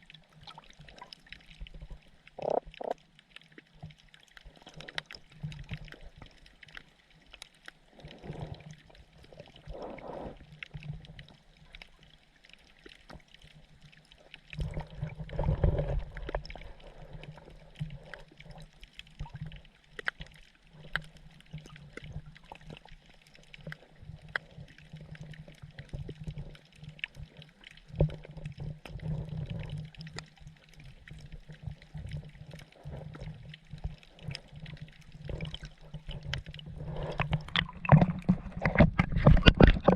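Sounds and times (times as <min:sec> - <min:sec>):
low underwater hum: 0:00.0 - 0:39.9
underwater crackle of clicks: 0:00.0 - 0:39.9.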